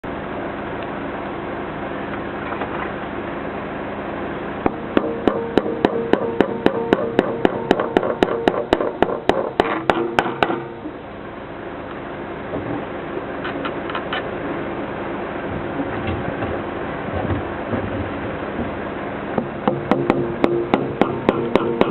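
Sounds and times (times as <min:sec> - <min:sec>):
hammer striking metal: 0:04.9 - 0:10.8, 0:19.6 - 0:21.9.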